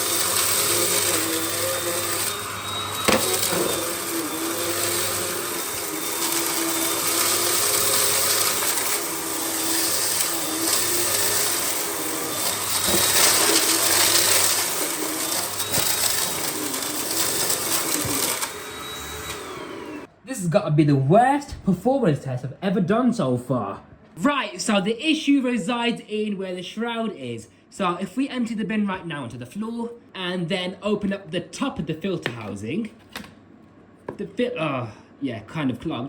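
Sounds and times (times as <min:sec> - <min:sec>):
vacuum cleaner motor whining: 0:00.0 - 0:20.1.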